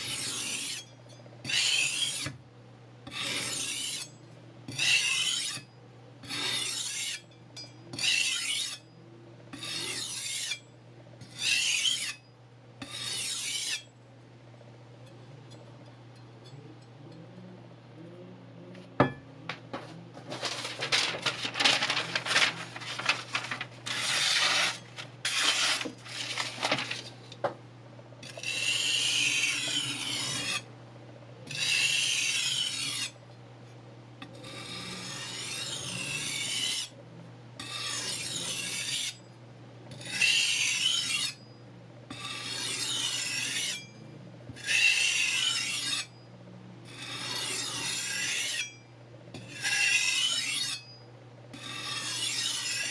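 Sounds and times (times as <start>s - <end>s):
knife blade rasping on sandpaper: 3.1s - 4.1s, 4.7s - 5.6s, 6.2s - 7.2s, 23.9s - 26.6s, 28.3s - 30.6s, 46.9s - 48.7s, 51.6s - 52.9s.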